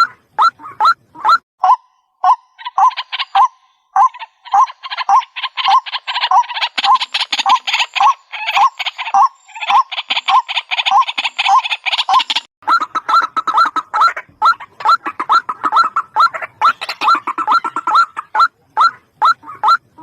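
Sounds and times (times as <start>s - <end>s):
fast harsh bird chatter: 2.6s - 18.5s.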